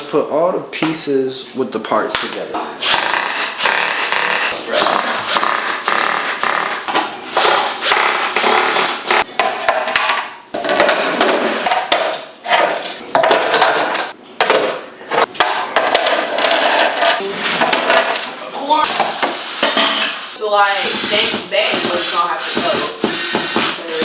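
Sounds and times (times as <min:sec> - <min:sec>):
tools scraping: 0:02.8 - 0:14.2, 0:15.1 - 0:24.0
hammering: 0:02.9 - 0:16.2.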